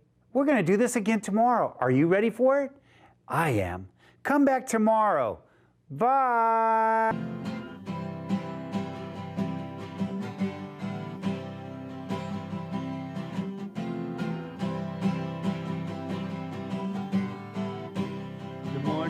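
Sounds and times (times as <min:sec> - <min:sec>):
strummed acoustic guitar music: 0:07.1 - 0:19.0.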